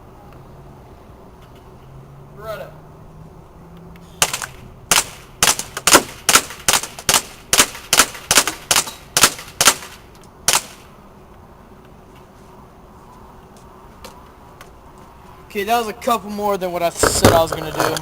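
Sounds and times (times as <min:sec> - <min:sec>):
airsoft pistol shots cracking: 0:04.2 - 0:10.9.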